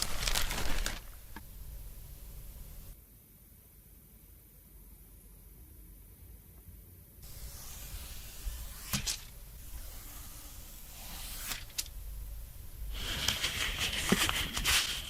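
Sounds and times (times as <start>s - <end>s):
scraping and rustling: 0.0s - 3.0s, 7.2s - 15.0s.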